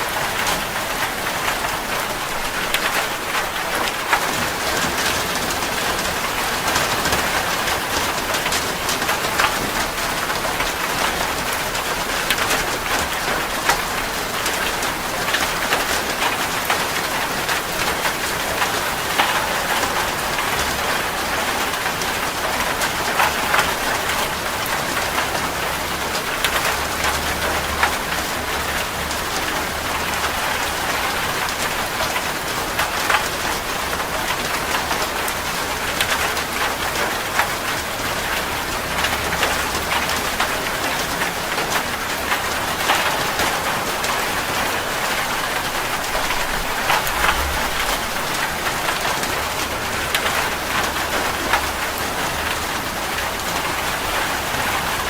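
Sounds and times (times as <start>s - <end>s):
heavy rain on a metal roof: 0.0s - 55.0s
low rumble: 46.4s - 48.5s.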